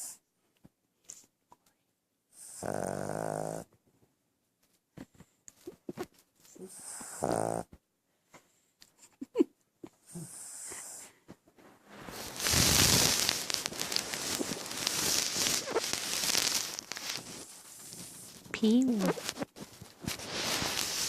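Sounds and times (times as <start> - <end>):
dog snoring: 2.4 - 3.7, 6.6 - 7.7, 10.0 - 11.1, 12.1 - 18.4
loud continuous crackling: 12.1 - 21.0.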